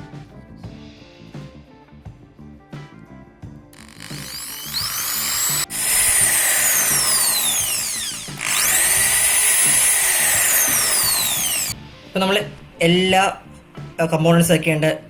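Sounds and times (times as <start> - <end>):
background music: 0.0 - 15.0
small electric drill whining: 3.8 - 11.8.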